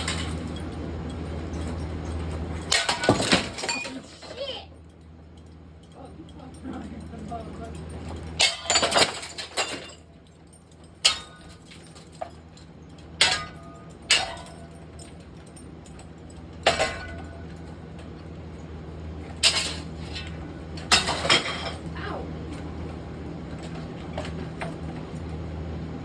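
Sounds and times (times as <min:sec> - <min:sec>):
steady low hum: 0:00.0 - 0:26.0
objects hitting glass light fixture: 0:02.6 - 0:04.4, 0:08.2 - 0:10.1.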